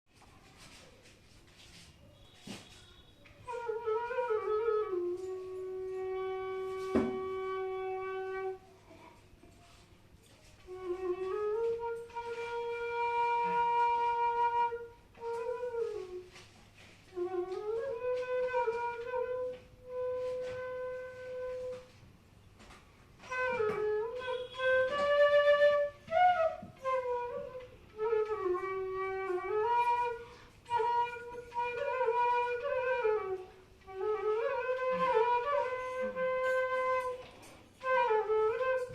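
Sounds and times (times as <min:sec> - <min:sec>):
bamboo flute melody: 0:01.5 - 0:08.8, 0:09.6 - 0:22.0, 0:22.6 - 0:38.9.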